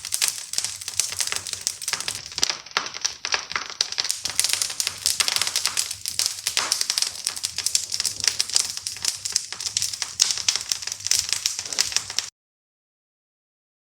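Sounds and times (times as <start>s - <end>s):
wood fire crackling and popping: 0.0s - 12.3s.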